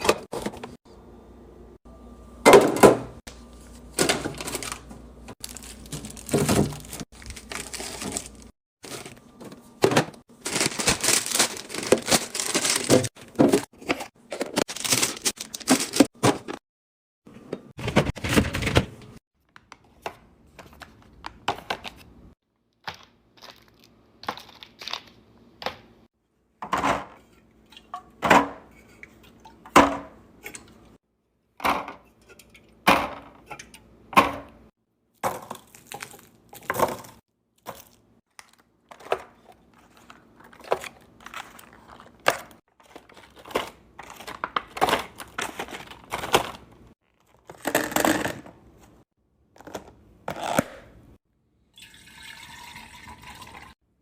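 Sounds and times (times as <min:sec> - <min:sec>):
food packaging crinkling and tearing: 0:04.2 - 0:09.4, 0:10.3 - 0:13.7, 0:14.3 - 0:16.1, 0:35.5 - 0:47.6.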